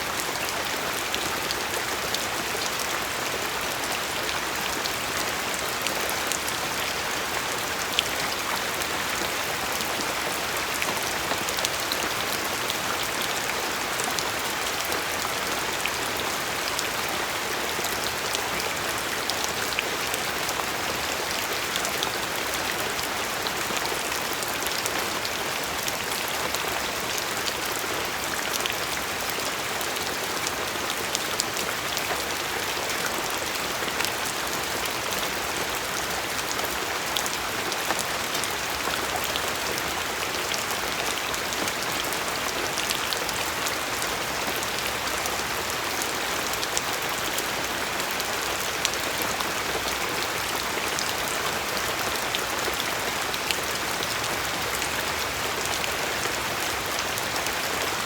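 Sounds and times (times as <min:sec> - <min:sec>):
steady rain: 0:00.0 - 0:58.0.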